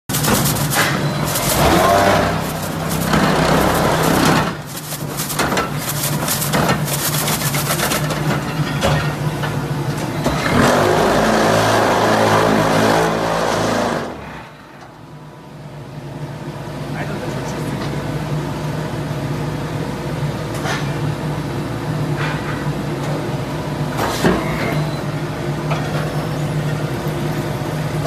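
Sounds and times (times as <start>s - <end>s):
hydraulic press motor hum: 0.1s - 4.7s
rapid rattling clatter: 0.1s - 9.2s.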